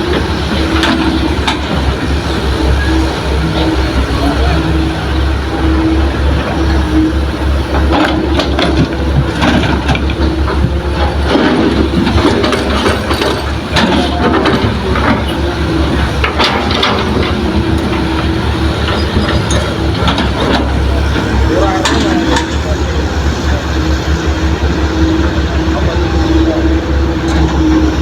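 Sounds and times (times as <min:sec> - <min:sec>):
heavy machinery diesel engines: 0:00.0 - 0:28.0
soil and rock clattering: 0:05.7 - 0:23.3.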